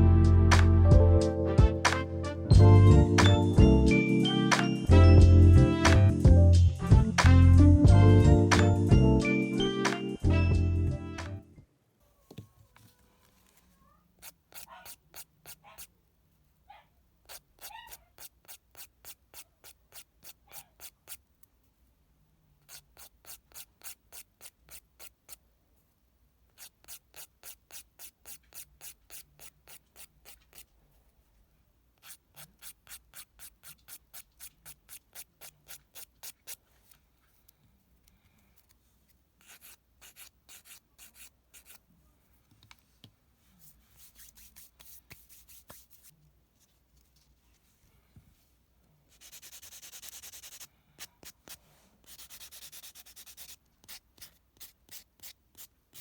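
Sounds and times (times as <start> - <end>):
nail file rasping on fingernail: 14.2 - 15.9, 17.3 - 21.3, 22.6 - 25.4, 26.6 - 30.7, 32.0 - 37.0, 39.4 - 41.8, 44.0 - 46.1, 49.2 - 56.0.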